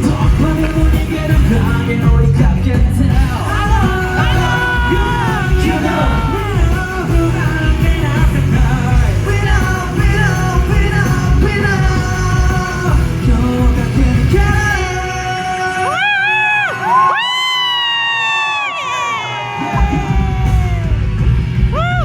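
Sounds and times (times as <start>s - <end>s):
group singing pop song live: 0.0s - 17.2s
loud music with heavy bass: 0.0s - 22.0s
shouted vocals: 3.1s - 8.6s, 14.7s - 21.1s.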